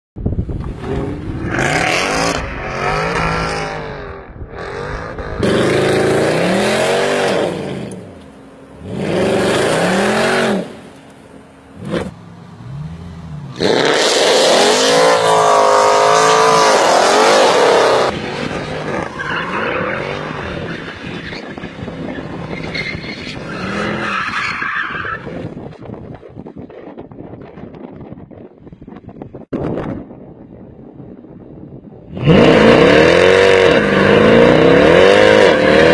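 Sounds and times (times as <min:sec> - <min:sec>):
car engine revving: 0:00.7 - 0:21.1, 0:32.1 - 0:35.9.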